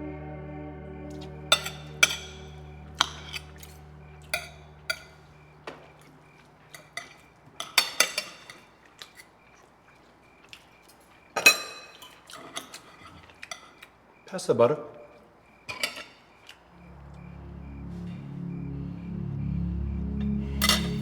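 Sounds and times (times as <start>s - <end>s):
low held music notes: 0.0s - 6.3s, 16.7s - 21.0s
cutlery clinking on plates: 1.5s - 14.0s, 15.6s - 16.7s, 20.6s - 21.0s.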